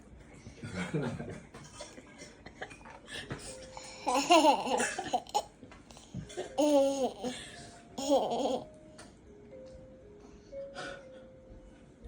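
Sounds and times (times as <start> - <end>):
toddler laughing and babbling: 3.9 - 7.4, 8.0 - 8.7.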